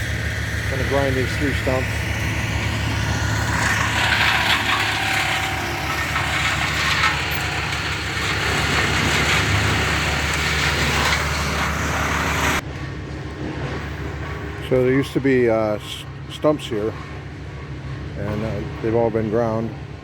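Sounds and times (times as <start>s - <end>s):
cutter wheel grinding wood: 0.0s - 12.6s
stump grinder engine running: 0.0s - 12.6s.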